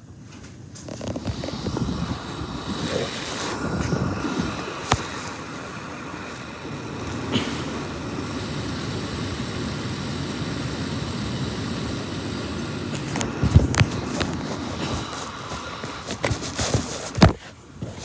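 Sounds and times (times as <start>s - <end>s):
fan whooshing: 0.0s - 18.0s.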